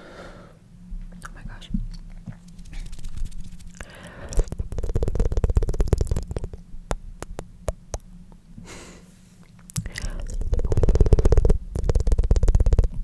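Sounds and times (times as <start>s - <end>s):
breathy hiss: 0.0s - 0.6s, 3.7s - 5.4s, 8.6s - 11.6s
tongue fluttering clicks: 2.4s - 8.1s, 9.7s - 13.0s.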